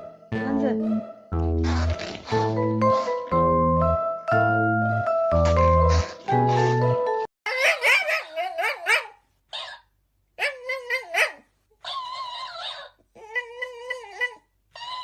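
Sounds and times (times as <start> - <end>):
dog whining and yipping: 10.4 - 15.0.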